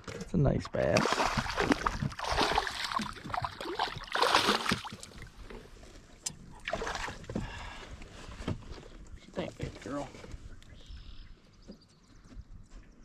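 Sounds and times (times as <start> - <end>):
water splashing beside boat: 0.7 - 8.8.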